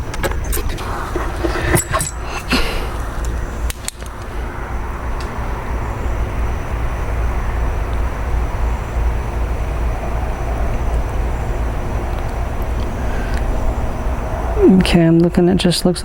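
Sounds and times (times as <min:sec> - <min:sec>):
key-cutting machine motor humming: 0:00.3 - 0:04.5.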